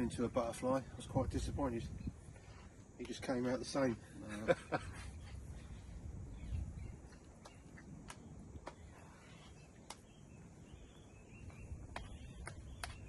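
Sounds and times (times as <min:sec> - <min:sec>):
faint bird calls: 0:04.2 - 0:13.0
sharp isolated ticks: 0:07.4 - 0:08.8, 0:09.8 - 0:10.1.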